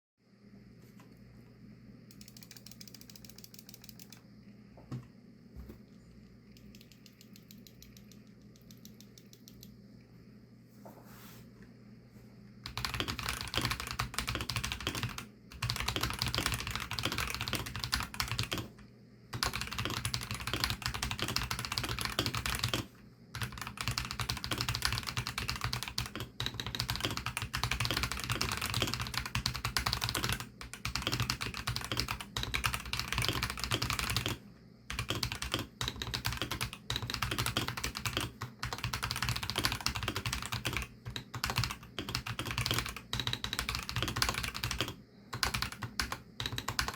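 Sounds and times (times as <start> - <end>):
fast typing on mechanical keyboard: 2.1 - 4.2, 6.6 - 9.7, 12.6 - 46.9.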